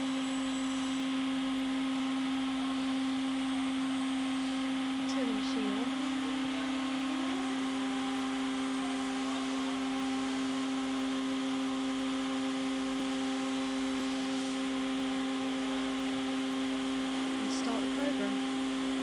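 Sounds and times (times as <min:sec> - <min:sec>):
cnc router motor hum: 0:00.0 - 0:19.0.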